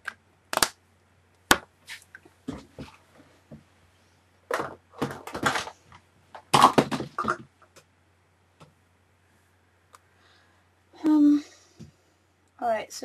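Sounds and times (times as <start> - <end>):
makeup items clattering: 4.5 - 7.5.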